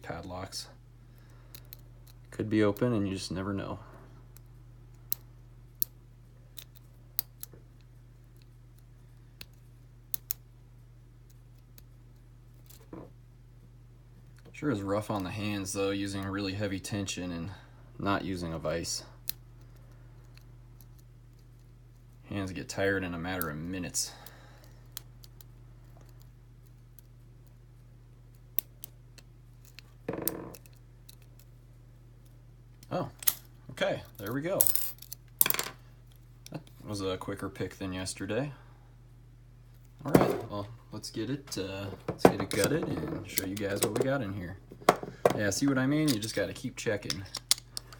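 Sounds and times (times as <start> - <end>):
steady low hum: 0.0 - 47.9
lock pick clicking: 47.0 - 47.9.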